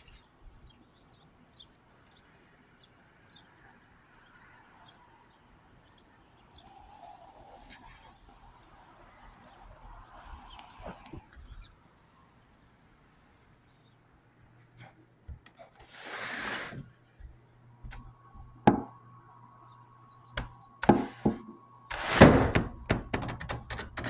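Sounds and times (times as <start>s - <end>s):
sharp knock: 20.4s - 23.7s.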